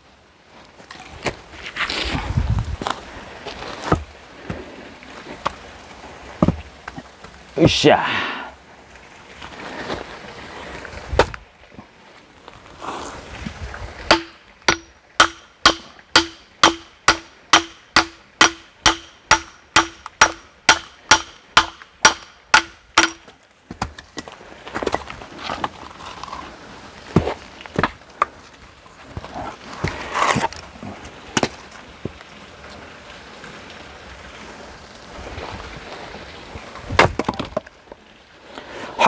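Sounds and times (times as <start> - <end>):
hatchet splitting firewood: 3.7 - 4.6, 6.4 - 7.4, 11.1 - 11.4, 14.1 - 26.4, 27.1 - 28.4, 37.0 - 37.7.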